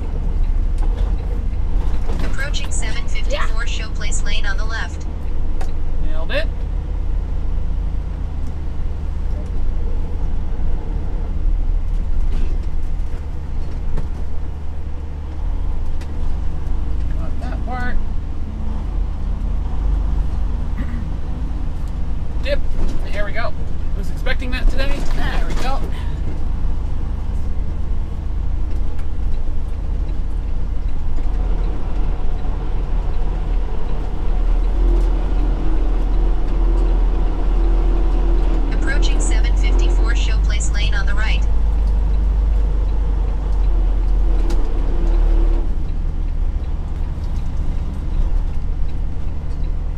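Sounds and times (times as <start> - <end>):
road noise: 0.0 - 49.9
truck diesel engine rumble: 0.0 - 49.9
higher steady hum: 2.1 - 9.5, 25.9 - 49.9.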